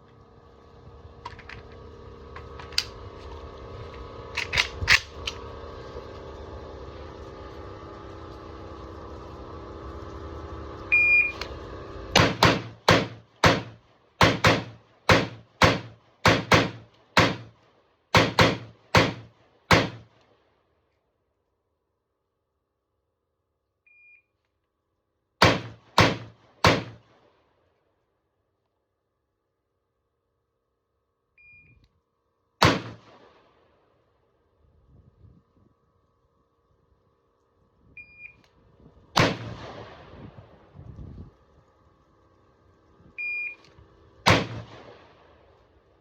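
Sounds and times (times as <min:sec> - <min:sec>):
steady low hum: 0:00.0 - 0:46.0
rifle shots: 0:12.1 - 0:17.5, 0:18.1 - 0:20.1, 0:25.4 - 0:27.2, 0:32.6 - 0:33.6, 0:39.2 - 0:40.3, 0:44.2 - 0:45.2.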